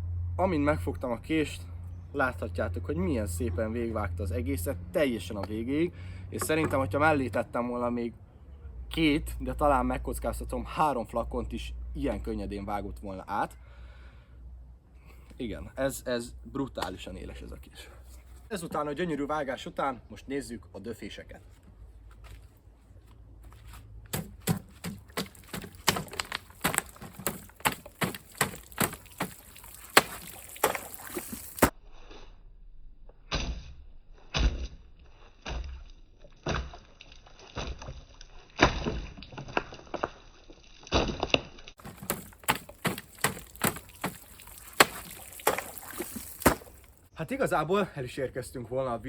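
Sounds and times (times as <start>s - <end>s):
knife stabbing plastic bottle: 24.1s - 31.7s, 40.9s - 47.0s.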